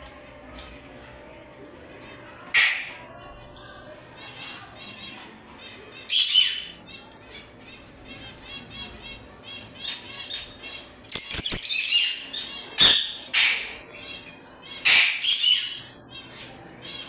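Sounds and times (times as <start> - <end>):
birds chirping: 1.9 - 17.0
birds screeching: 2.1 - 17.0.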